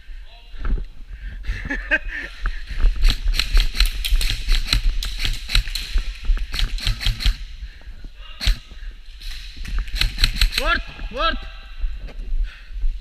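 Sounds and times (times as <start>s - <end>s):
airsoft guns firing: 3.0s - 7.6s, 8.4s - 10.9s.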